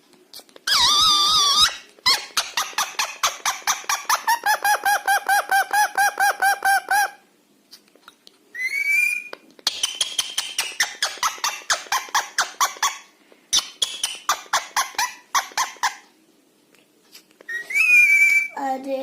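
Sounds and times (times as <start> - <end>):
parrot rapid clipped squeaks: 0.6 - 7.2, 8.6 - 16.0, 17.5 - 18.6
parrot rising whistle: 0.7 - 1.8, 8.6 - 9.3, 17.5 - 18.6.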